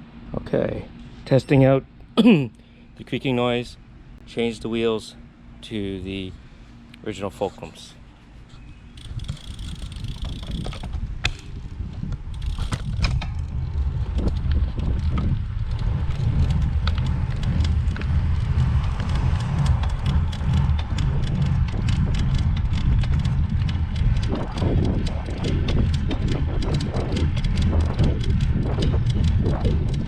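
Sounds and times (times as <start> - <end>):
bike clicks and creaks: 8.5 - 30.0
bicycle rolling rumble: 8.6 - 30.0.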